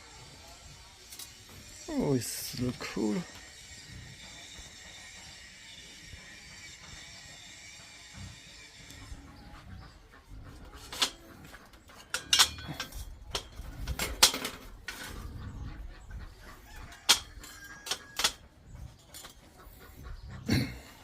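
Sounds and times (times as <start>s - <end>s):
metal items clinking: 10.8s - 15.2s.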